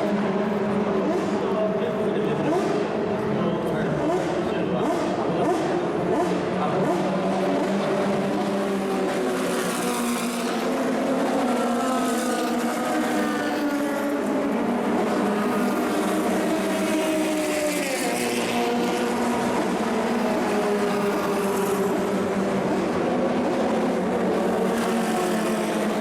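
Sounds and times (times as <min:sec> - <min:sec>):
racing car engines revving: 0:00.0 - 0:26.0.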